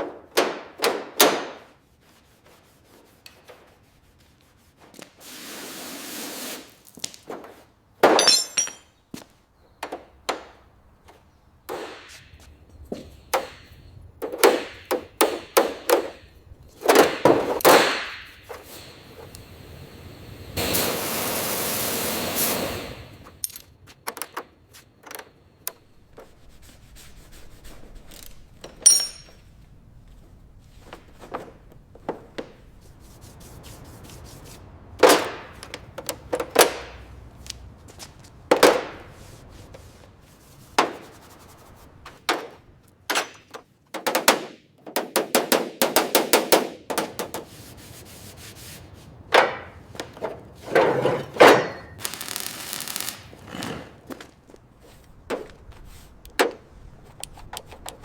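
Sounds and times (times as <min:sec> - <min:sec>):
rubbing strokes: 0:26.2 - 0:28.5, 0:32.7 - 0:34.7.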